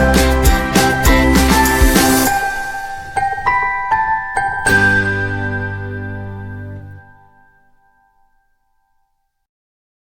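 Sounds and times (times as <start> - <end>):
music with steady beat and jingling: 0.0 - 6.9.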